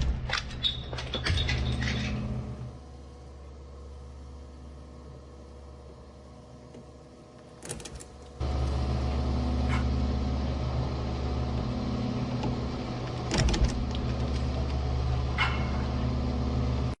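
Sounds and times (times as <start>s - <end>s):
shredder motor humming: 2.8s - 17.0s.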